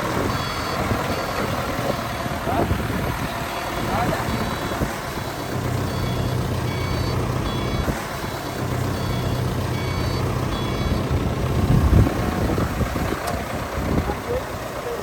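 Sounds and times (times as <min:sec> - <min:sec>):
engine running: 0:00.0 - 0:15.0
low machinery rumble: 0:00.0 - 0:15.0
reversing alarm beeping: 0:00.2 - 0:11.2.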